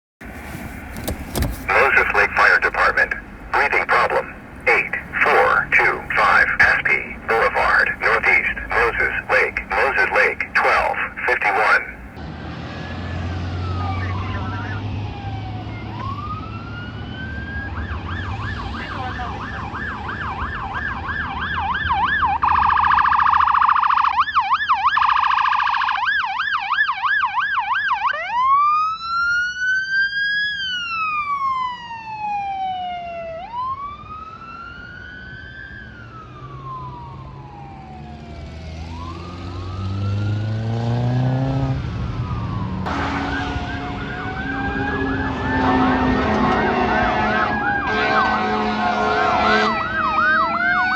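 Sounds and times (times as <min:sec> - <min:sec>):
fire engine sirens: 0:01.7 - 0:18.8, 0:19.4 - 0:41.0, 0:41.9 - 0:50.9.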